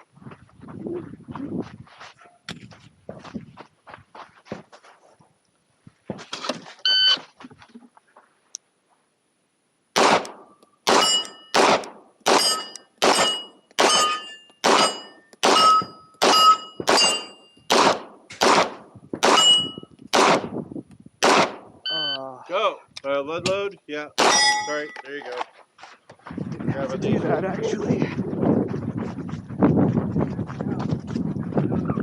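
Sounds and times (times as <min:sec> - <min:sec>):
shot timer beep: 0:06.9 - 0:07.2, 0:10.9 - 0:11.6, 0:12.3 - 0:17.7, 0:19.3 - 0:19.9, 0:21.9 - 0:22.2
pistol shots: 0:10.0 - 0:20.5, 0:21.2 - 0:21.7, 0:24.2 - 0:24.8
ringing steel targets hit: 0:10.9 - 0:18.5, 0:19.2 - 0:19.9, 0:24.2 - 0:25.2.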